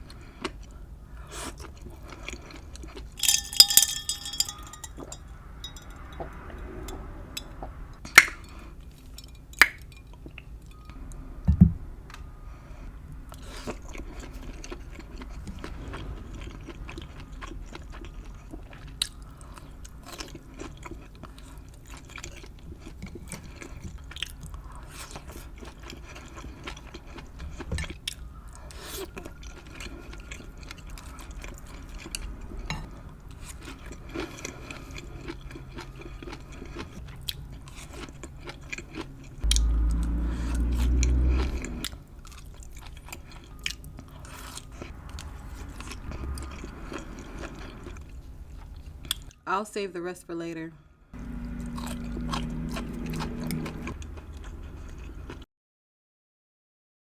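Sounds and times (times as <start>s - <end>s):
wet mouth clicks and smacks: 8.2s - 8.4s
low thump: 11.5s - 11.8s.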